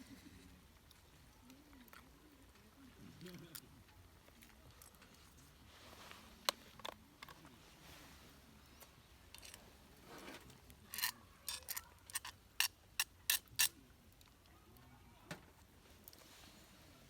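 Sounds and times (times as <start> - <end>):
sharp clicks of small objects: 10.9 - 13.7.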